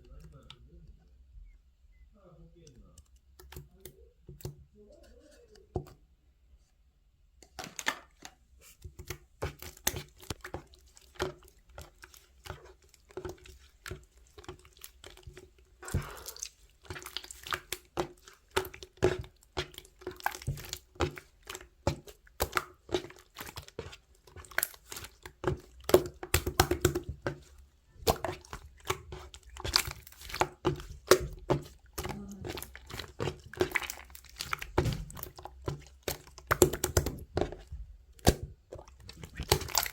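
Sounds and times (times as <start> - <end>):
objects tapping and clicking: 16.9 - 39.9.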